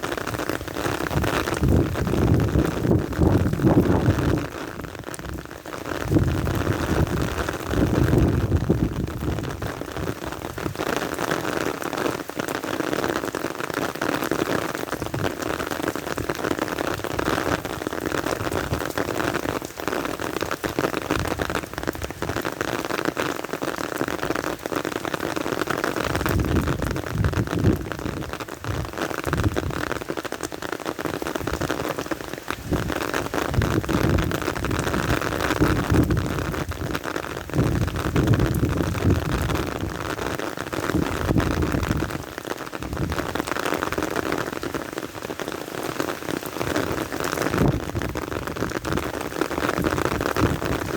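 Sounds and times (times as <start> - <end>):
rain drumming on an umbrella: 0.0 - 50.9
gusting wind rumble: 1.0 - 4.5, 6.0 - 10.8, 32.6 - 40.2, 47.5 - 49.2.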